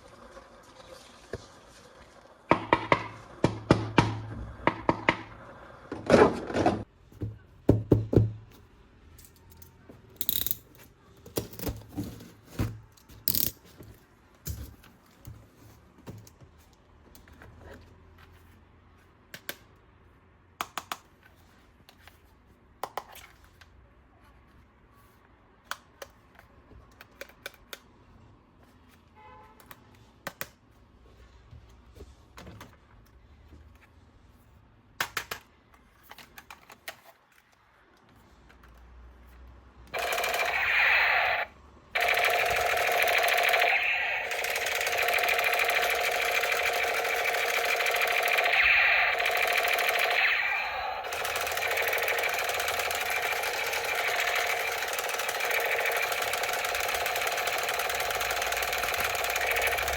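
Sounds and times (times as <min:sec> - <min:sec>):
plastic toys clicking and tapping: 0:09.2 - 0:11.8, 0:51.1 - 0:59.9.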